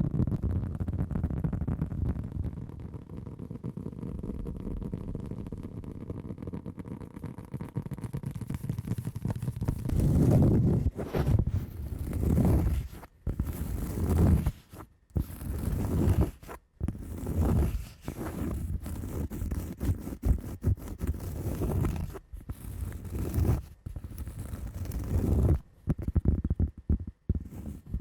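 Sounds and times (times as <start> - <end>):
hand scratching textured surface: 6.2 - 28.0.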